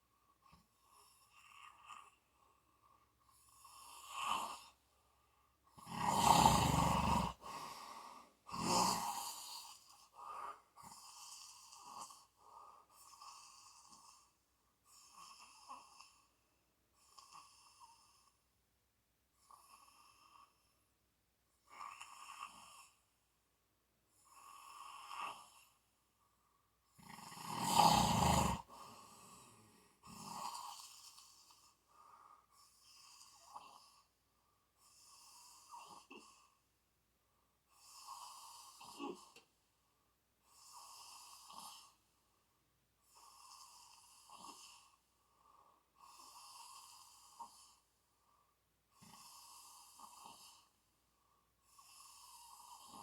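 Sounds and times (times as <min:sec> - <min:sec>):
quiet breath sounds: 0:00.0 - 0:53.0
person snoring: 0:05.7 - 0:12.2, 0:26.9 - 0:31.6, 0:37.8 - 0:39.4.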